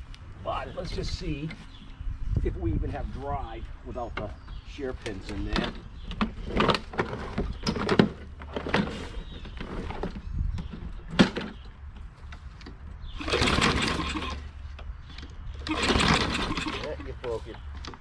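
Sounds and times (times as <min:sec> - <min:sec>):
lawn mower engine humming: 0:12.4 - 0:18.0.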